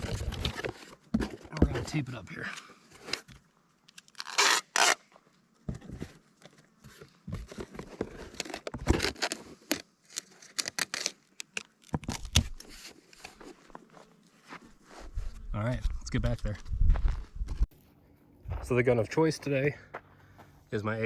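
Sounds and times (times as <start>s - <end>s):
tape scraping and rustling: 0.0s - 2.0s, 2.9s - 15.3s
tape ripping off roll: 4.0s - 5.1s, 8.2s - 12.9s.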